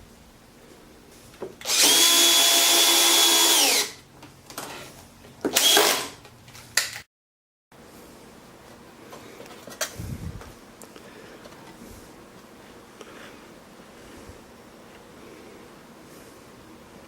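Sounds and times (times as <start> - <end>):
power drill whining: 1.6 - 4.0, 5.5 - 6.2.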